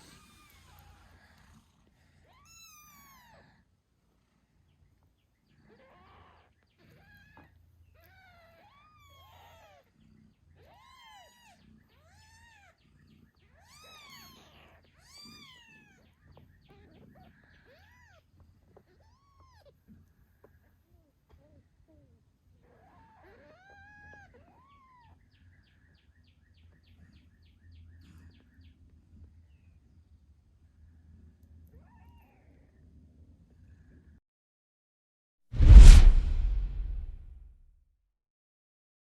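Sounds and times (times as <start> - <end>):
kittens meowing: 2.2 - 3.6.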